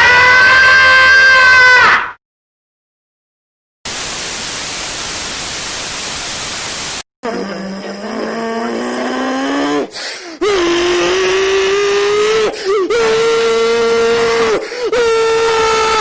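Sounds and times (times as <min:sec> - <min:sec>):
person breathing: 0:09.9 - 0:10.4, 0:12.5 - 0:12.8, 0:14.6 - 0:14.9
person yelling long notes: 0:10.5 - 0:12.4.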